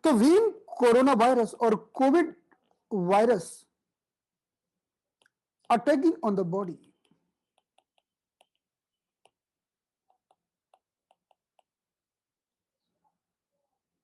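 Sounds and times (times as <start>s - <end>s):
faint irregular clicks: 5.1s - 5.8s, 6.8s - 11.8s.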